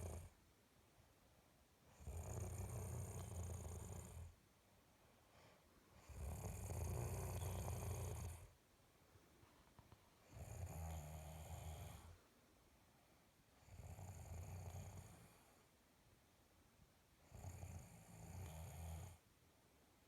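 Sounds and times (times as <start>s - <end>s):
pet snoring: 0.0s - 0.4s, 1.9s - 4.4s, 6.0s - 8.6s, 10.2s - 12.2s, 13.6s - 15.6s, 17.2s - 19.2s.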